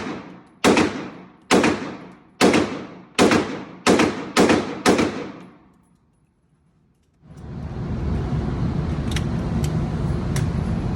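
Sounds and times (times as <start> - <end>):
gunshots with ringing echo: 0.0 - 5.7.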